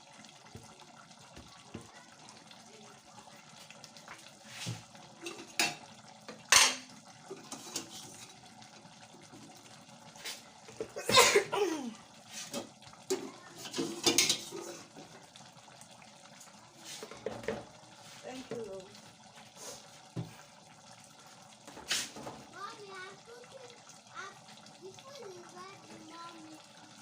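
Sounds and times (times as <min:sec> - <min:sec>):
pots and spoons clattering: 0:05.2 - 0:08.4, 0:10.7 - 0:11.8, 0:12.4 - 0:15.1, 0:17.0 - 0:17.7.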